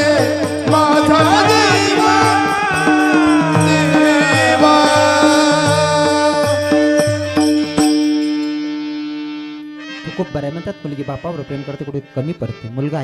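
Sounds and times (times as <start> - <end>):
person singing wavering line: 0.0 - 8.5
drum strokes: 0.0 - 8.6
harmonium chord: 0.0 - 13.0.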